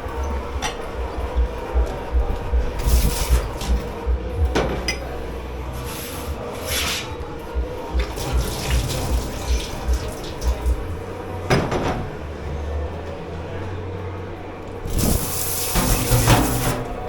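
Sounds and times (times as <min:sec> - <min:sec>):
steady hum: 0:00.0 - 0:17.0
tap water running: 0:07.9 - 0:10.9, 0:14.8 - 0:17.0
dishes being scrubbed: 0:14.9 - 0:17.0.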